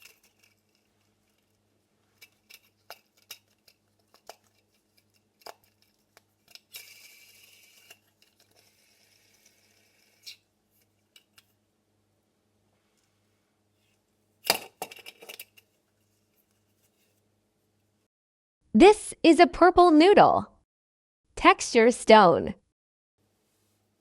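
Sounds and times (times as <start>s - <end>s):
spinner whirring rattle: 2.2s - 11.4s.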